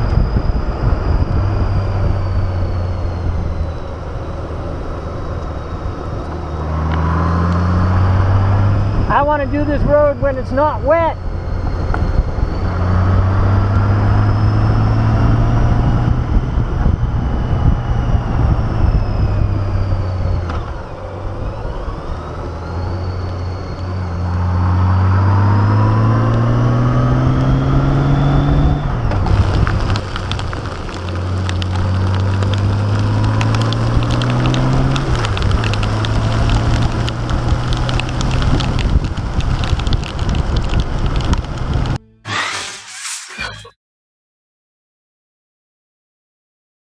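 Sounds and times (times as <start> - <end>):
wind noise: 0.0 - 20.6, 28.2 - 42.8
tyres on wet road: 0.7 - 16.0, 19.6 - 43.3.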